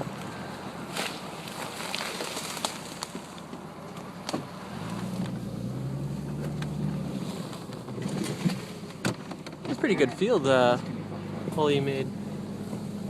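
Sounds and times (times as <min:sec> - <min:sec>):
truck engine hum: 0:00.0 - 0:13.0
truck rushing through brush: 0:00.0 - 0:13.0
branches snapping: 0:00.2 - 0:05.4.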